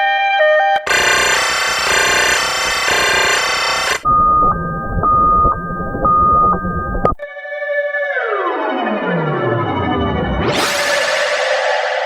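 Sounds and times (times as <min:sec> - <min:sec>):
two-tone ambulance siren: 0:00.0 - 0:07.2
low rumble: 0:04.1 - 0:07.2.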